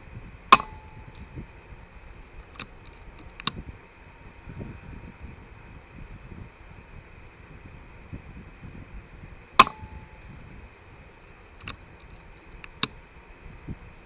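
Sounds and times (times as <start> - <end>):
air rifle shot: 0.5 - 1.3, 9.6 - 10.3.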